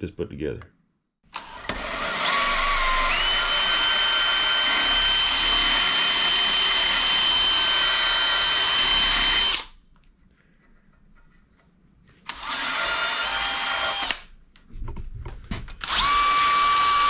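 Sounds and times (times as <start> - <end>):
power tool motor whine: 1.4 - 9.7, 12.3 - 14.2, 15.8 - 17.0.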